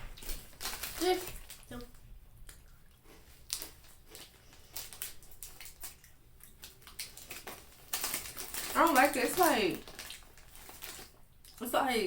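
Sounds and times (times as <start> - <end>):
crunchy snack chewing: 2.5 - 11.6.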